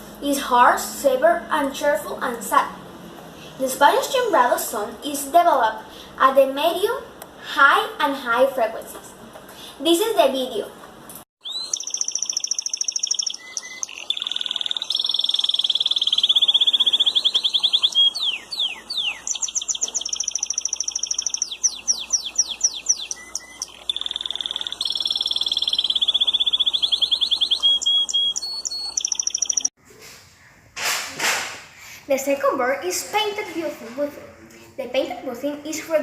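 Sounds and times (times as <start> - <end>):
canary singing trills: 11.4 - 29.7.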